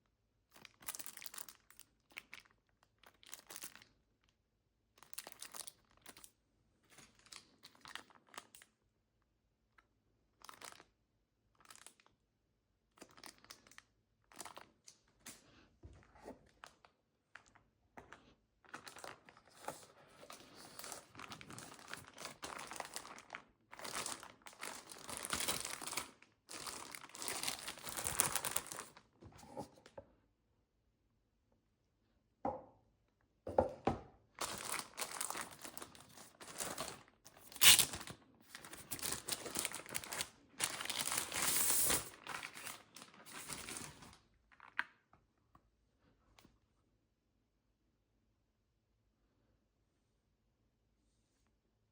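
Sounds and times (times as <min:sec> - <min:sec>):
packaging crinkling and rustling: 0:00.6 - 0:03.9, 0:05.0 - 0:06.3, 0:06.9 - 0:08.7, 0:10.4 - 0:10.9, 0:11.6 - 0:12.1, 0:12.9 - 0:29.8, 0:34.4 - 0:45.0.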